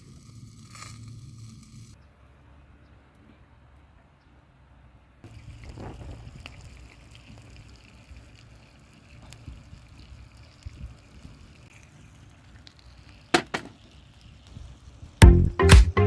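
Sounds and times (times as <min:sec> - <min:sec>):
music with strong beat: 0:15.2 - 0:16.0.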